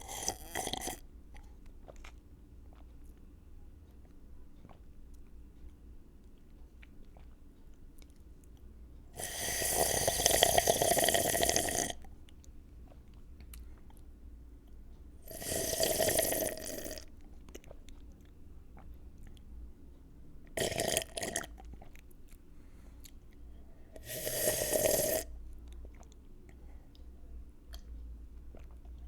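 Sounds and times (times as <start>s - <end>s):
person slurping a drink: 0.0s - 1.0s, 9.2s - 12.0s, 15.3s - 17.0s, 20.6s - 21.5s, 24.0s - 25.3s.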